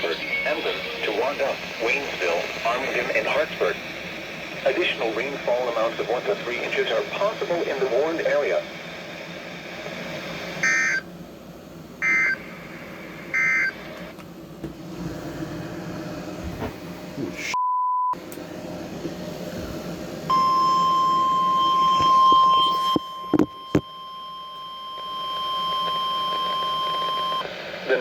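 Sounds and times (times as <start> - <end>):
warbling data bursts: 0.0 - 8.7
radio hiss: 0.0 - 11.1, 12.0 - 14.2, 16.5 - 17.6, 21.1 - 23.8, 26.3 - 28.0.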